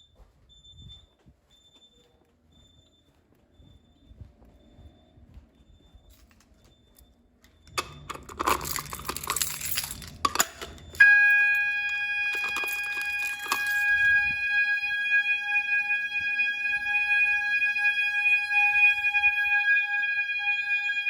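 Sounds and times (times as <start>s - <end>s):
fire alarm horn tone: 5.8s - 21.0s.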